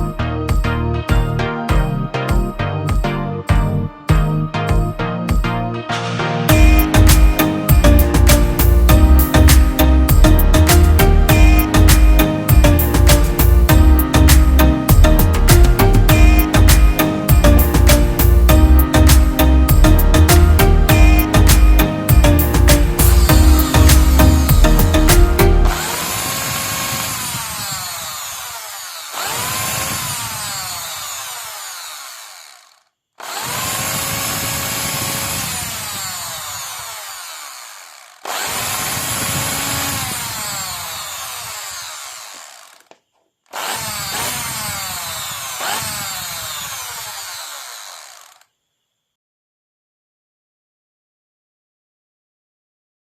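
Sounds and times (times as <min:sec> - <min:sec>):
electric drill motor whining: 0:25.7 - 0:48.6.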